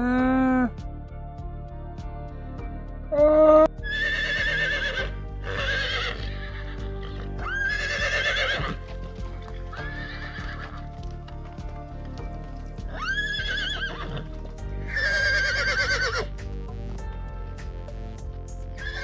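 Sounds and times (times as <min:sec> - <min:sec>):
background music: 0:00.0 - 0:19.0
horses neighing: 0:03.5 - 0:10.8, 0:12.8 - 0:14.3, 0:14.9 - 0:16.3, 0:18.8 - 0:19.0.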